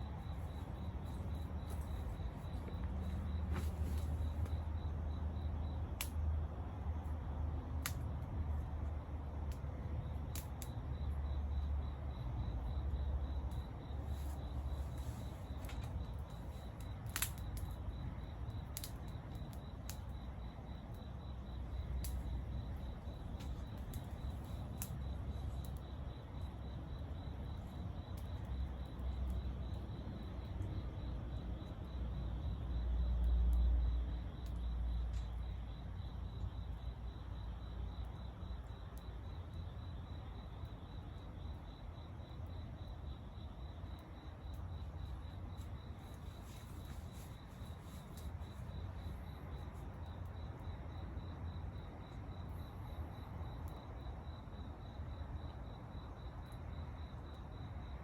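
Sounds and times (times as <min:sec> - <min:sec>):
campfire popping: 0:00.0 - 0:33.6, 0:40.4 - 0:50.6
crickets chirping: 0:00.0 - 0:58.0.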